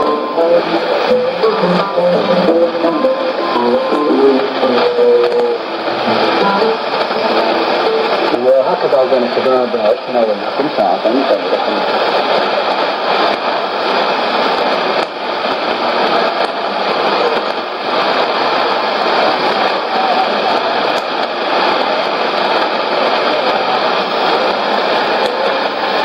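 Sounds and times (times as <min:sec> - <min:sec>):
radio static: 0:00.0 - 0:26.0.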